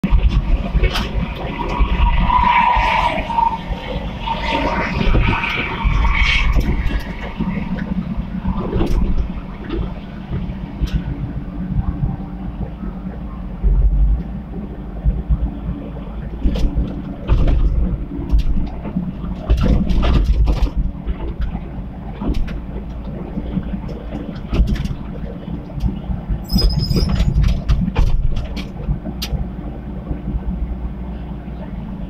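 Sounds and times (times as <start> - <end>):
excavator diesel engine: 0.0 - 32.0
high squeak: 26.4 - 27.4.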